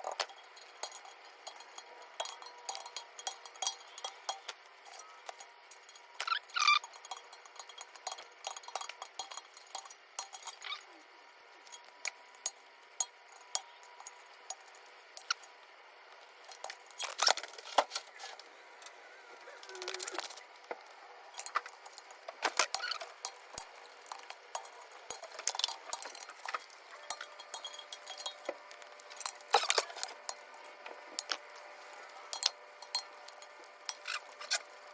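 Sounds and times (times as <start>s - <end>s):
metal tools clinking: 0.0s - 11.0s, 21.4s - 34.9s.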